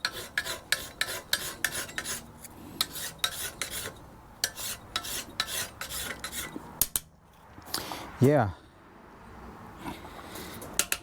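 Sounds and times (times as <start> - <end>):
hand file rasping on steel: 0.0 - 6.6.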